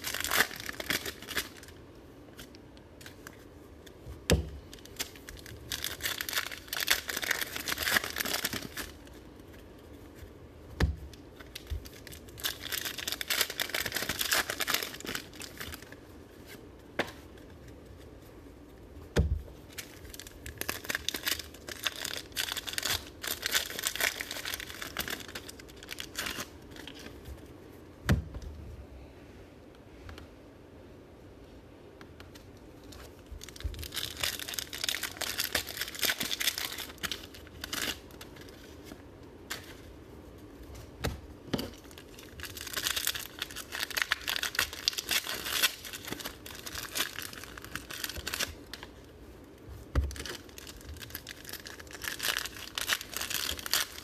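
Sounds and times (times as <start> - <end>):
card pack wrappers tearing: 0.0 - 1.8, 4.6 - 9.2, 11.3 - 16.0, 19.6 - 27.2, 32.8 - 39.9, 41.5 - 48.9, 50.0 - 54.0.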